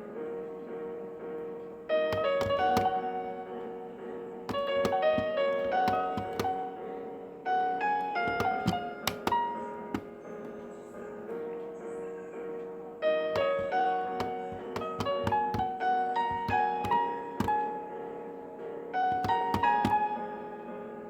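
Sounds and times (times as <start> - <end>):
slow piano melody: 0.0 - 21.0.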